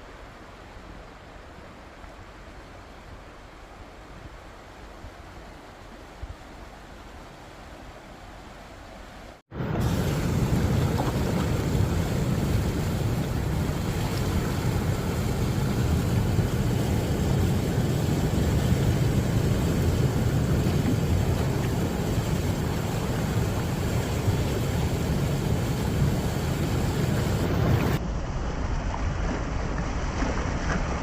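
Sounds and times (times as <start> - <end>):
floodwater rushing: 9.3 - 31.0.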